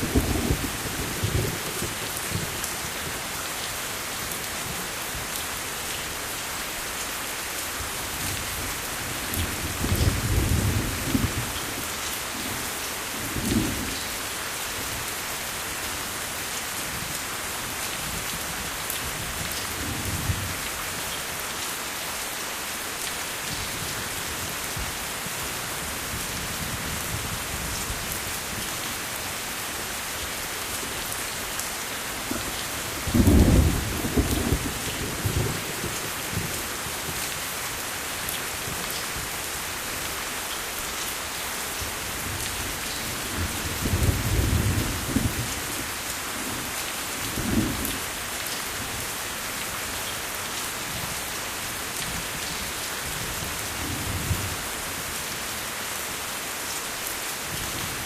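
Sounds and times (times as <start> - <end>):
thunder rumbling: 0.0 - 2.4
heavy rain hissing: 0.0 - 58.0.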